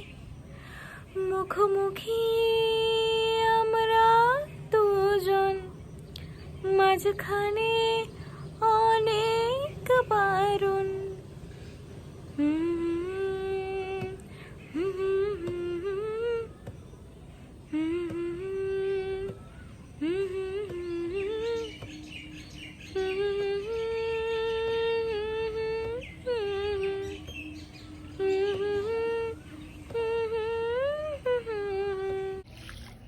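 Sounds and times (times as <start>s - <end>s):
woman humming: 12.4s - 16.6s, 17.6s - 21.8s, 22.9s - 32.5s.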